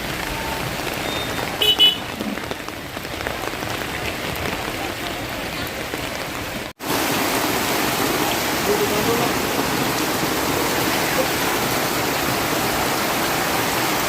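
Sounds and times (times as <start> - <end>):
heavy rain: 0.0 - 14.0
running floodwater: 0.0 - 14.0.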